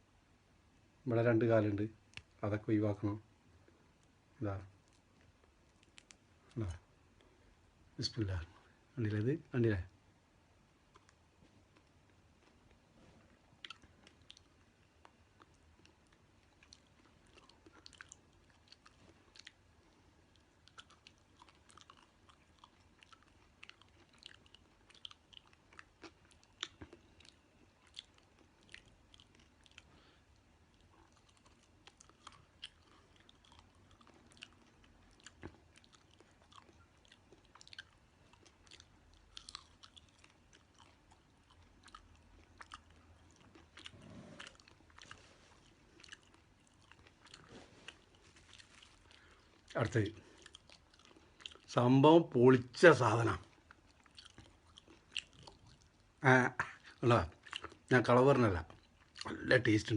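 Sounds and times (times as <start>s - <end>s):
crunchy chewing: 10.9s - 51.8s, 53.3s - 56.2s, 56.8s - 57.9s.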